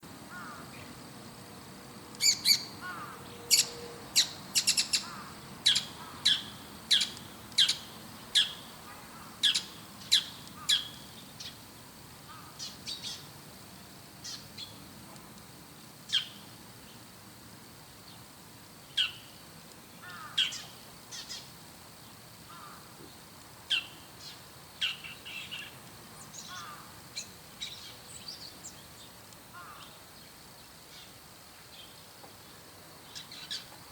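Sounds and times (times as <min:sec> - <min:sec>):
shrike shrill calls: 0:02.2 - 0:08.7.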